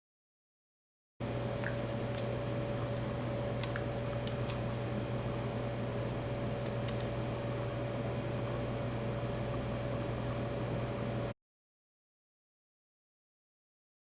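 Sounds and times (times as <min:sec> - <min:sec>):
steady electrical hum: 0:01.2 - 0:11.4.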